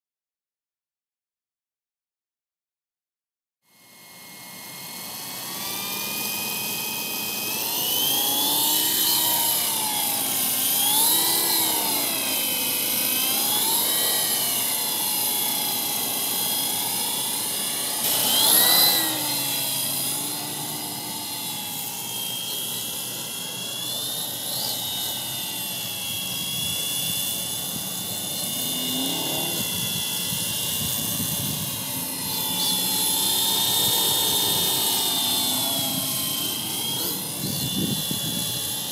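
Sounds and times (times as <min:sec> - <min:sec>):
rc helicopter motor and rotor whining: 0:03.7 - 0:38.9.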